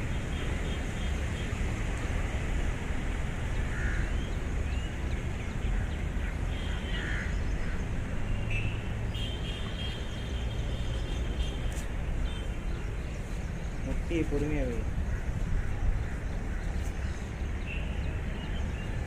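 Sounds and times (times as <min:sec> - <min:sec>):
birds chirping: 0:03.4 - 0:19.0.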